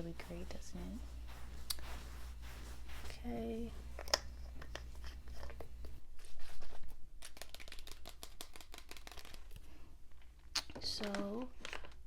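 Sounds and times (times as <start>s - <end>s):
soft crackling clicks and rustles: 3.8s - 12.0s.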